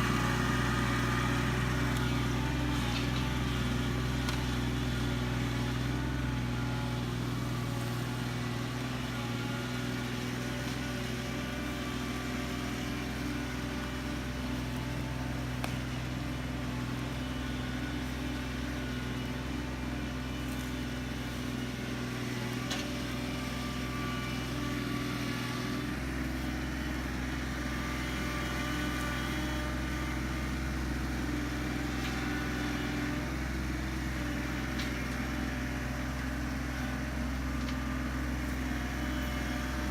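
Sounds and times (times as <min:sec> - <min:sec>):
engine humming steadily: 0:00.0 - 0:39.9.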